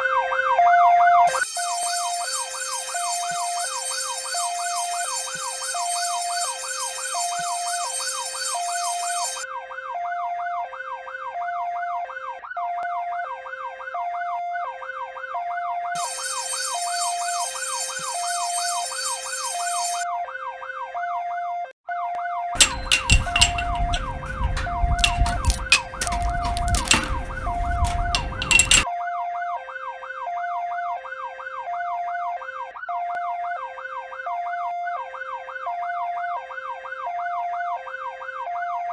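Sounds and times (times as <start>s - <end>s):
emergency siren yelp: 0.0s - 38.9s
high-low two-tone siren: 0.0s - 38.9s
harsh buzzing tone: 1.3s - 9.4s, 16.0s - 20.0s
rumbling noise with clattering knocks: 22.6s - 28.8s.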